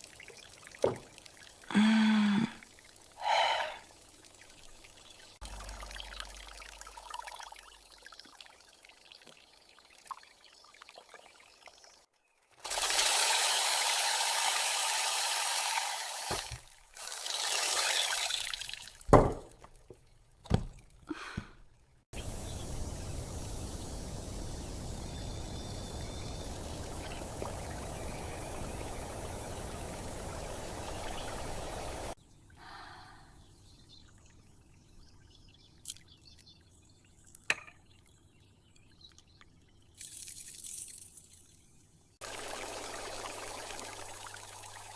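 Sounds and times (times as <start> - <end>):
steady hiss from pot: 22.2 - 32.2.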